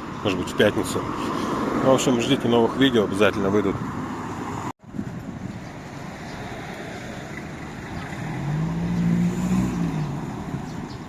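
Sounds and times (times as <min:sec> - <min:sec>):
steady traffic noise: 0:00.0 - 0:11.0
vehicle driving past: 0:06.2 - 0:11.0.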